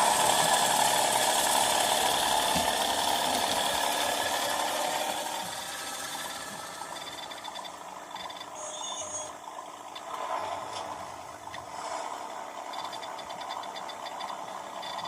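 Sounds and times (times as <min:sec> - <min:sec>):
rattly motor-car engine sound: 0:00.0 - 0:15.0
brief high tone: 0:08.6 - 0:09.3.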